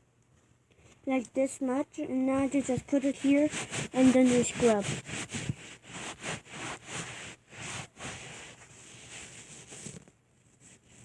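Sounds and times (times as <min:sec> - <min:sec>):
paper towel rubbing on carpet: 0:02.4 - 0:11.0.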